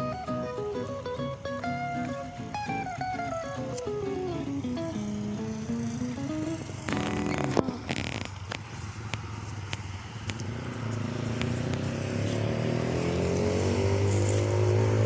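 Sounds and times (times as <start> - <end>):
sharp ticks: 0.4 - 12.4
vehicle engine approaching: 2.2 - 15.0.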